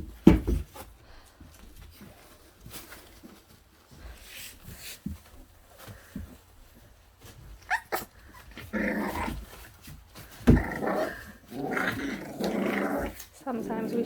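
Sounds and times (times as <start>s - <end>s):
thump: 0.2s - 0.7s
puppy yelps: 7.6s - 8.6s
puppies growling: 7.6s - 14.0s.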